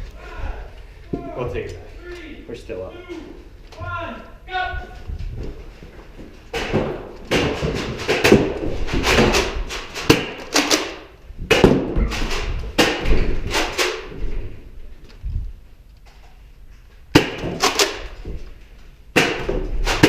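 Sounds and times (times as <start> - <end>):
loud thumps and clatters: 5.1 - 14.6, 19.2 - 20.0.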